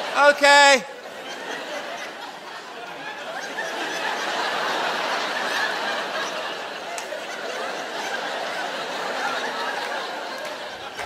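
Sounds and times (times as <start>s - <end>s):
audience laughing: 0.0s - 11.0s.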